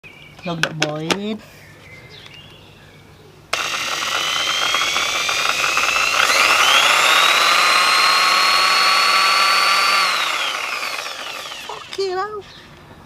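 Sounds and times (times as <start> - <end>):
power tool motor whining: 3.5 - 12.1.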